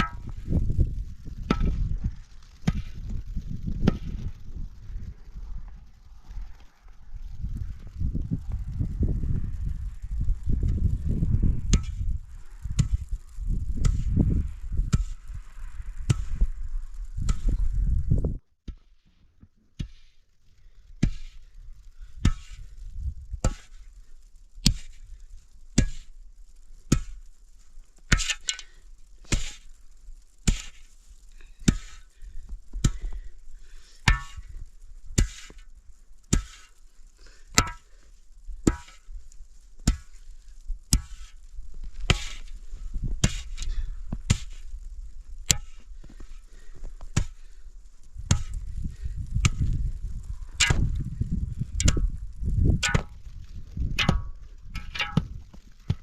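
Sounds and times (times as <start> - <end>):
hand tool chopping strikes: 50.6 - 50.9, 52.8 - 53.1, 54.0 - 56.0.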